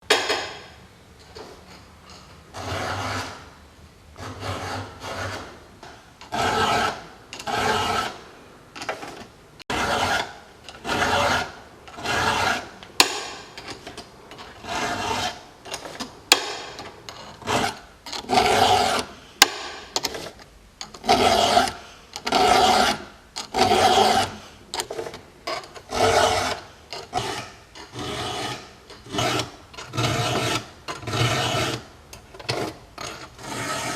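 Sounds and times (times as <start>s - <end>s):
rasping strokes on wood: 2.5s - 3.5s, 4.2s - 5.6s, 6.3s - 8.2s, 9.7s - 13.5s, 14.4s - 16.8s, 17.4s - 20.4s, 21.0s - 24.4s, 25.5s - 31.9s, 32.5s - 33.9s.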